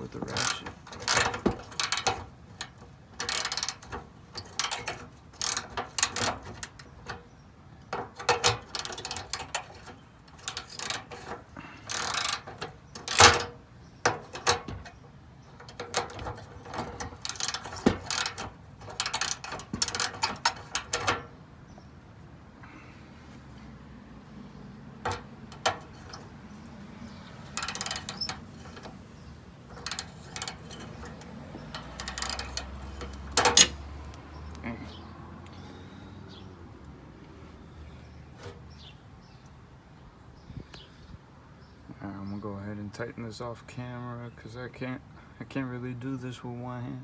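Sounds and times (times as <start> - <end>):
hand ratchet clicking: 0.2 - 7.0, 8.1 - 13.5, 15.6 - 21.2, 27.1 - 29.0, 29.7 - 33.9.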